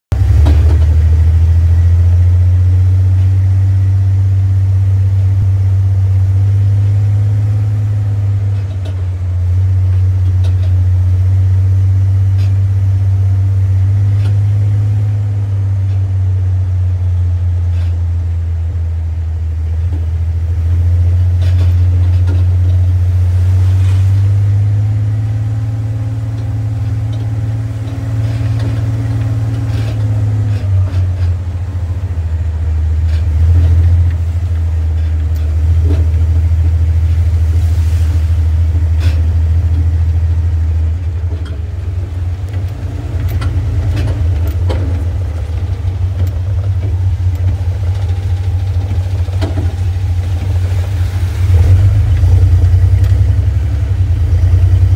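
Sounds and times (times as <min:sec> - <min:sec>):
engine running at low revs: 0:00.0 - 0:54.9.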